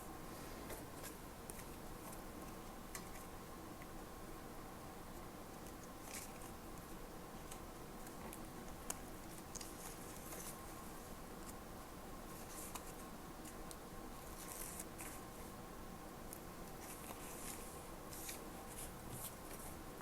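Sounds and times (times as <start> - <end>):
faint steady hum: 0.0 - 20.0
paper rustling: 16.8 - 19.8.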